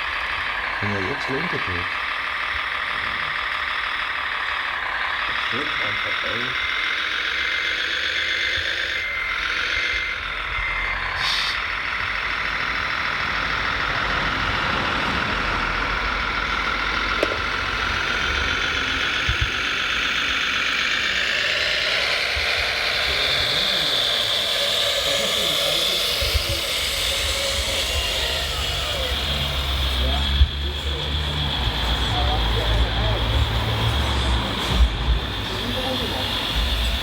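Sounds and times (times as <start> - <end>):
electric motors whining: 0.0 - 37.0
reversing beeper beeping: 27.0 - 37.0.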